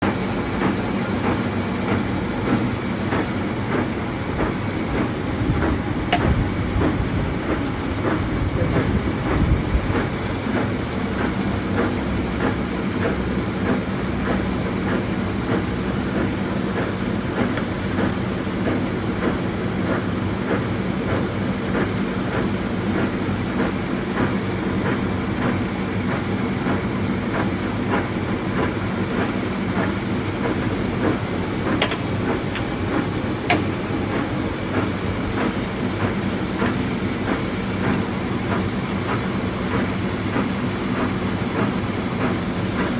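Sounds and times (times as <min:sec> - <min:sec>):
lathe running: 0:30.4 - 0:42.9
regular clicking clatter: 0:31.0 - 0:34.3.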